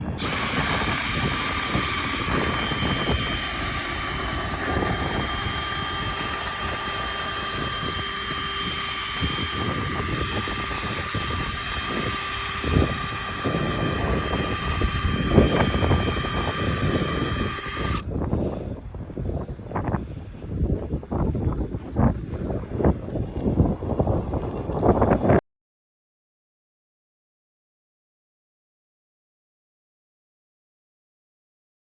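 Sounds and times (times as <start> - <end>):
motor whining with air rush: 0.0 - 18.5.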